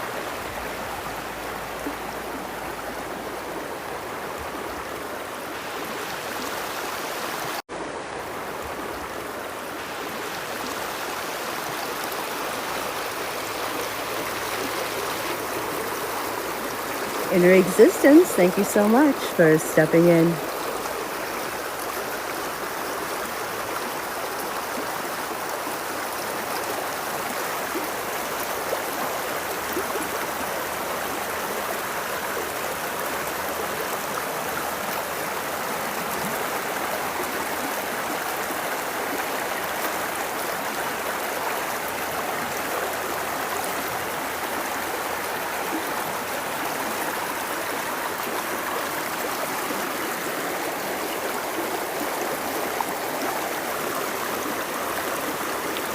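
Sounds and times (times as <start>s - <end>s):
river rushing: 0.0s - 55.9s.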